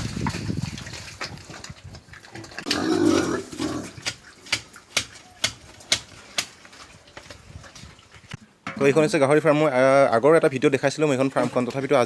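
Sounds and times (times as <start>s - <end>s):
pig grunting: 2.6s - 4.0s.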